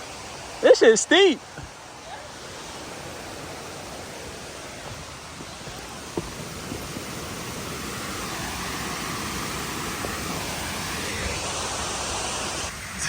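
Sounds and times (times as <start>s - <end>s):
waterfall rushing: 0.0s - 13.0s.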